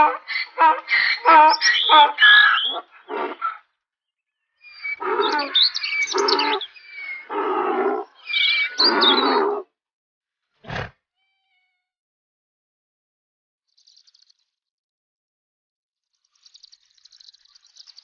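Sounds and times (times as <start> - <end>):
animal calling loudly: 0.0 - 3.6, 4.8 - 9.6
birds chirping: 0.0 - 3.6, 4.3 - 9.6.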